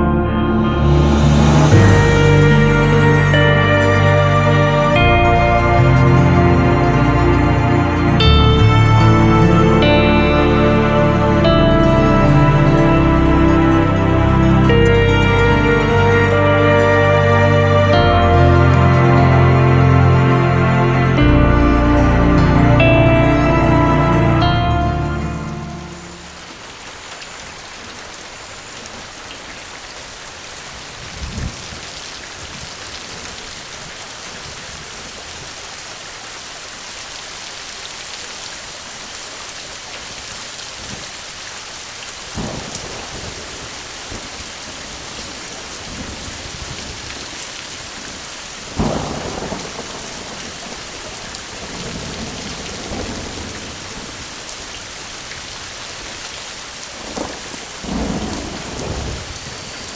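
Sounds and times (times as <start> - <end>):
steady rain hiss: 1.1 - 59.9
thunder claps and rumbles: 42.3 - 54.5, 57.0 - 59.9.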